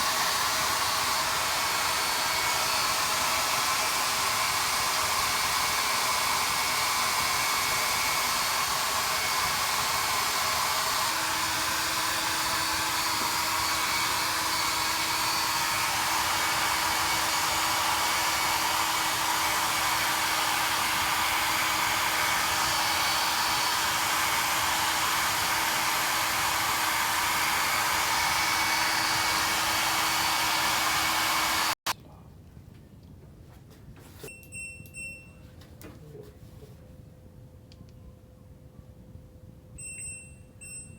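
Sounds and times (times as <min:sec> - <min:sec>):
hair dryer blowing: 0:00.0 - 0:31.9.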